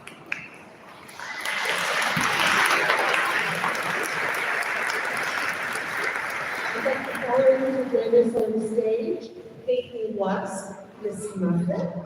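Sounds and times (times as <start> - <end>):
audience applause: 1.0 - 8.0.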